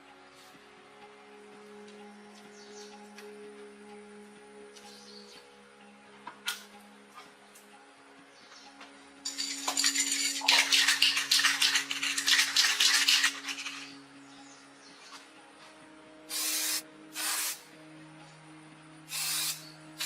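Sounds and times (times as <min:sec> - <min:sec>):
aerosol can spraying: 0:09.3 - 0:13.9, 0:16.3 - 0:17.6, 0:19.1 - 0:19.7
metal rattling and scraping: 0:09.3 - 0:14.0.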